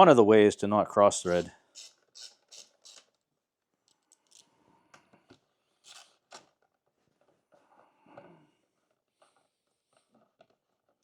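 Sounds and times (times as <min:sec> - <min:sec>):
screwdriver clicking on screws: 0:01.3 - 0:03.2, 0:05.8 - 0:06.5.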